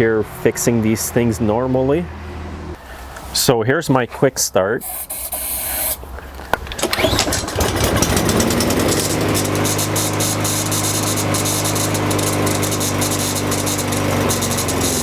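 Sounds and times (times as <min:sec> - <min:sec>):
lawnmower engine starting and running: 0:06.6 - 0:15.0.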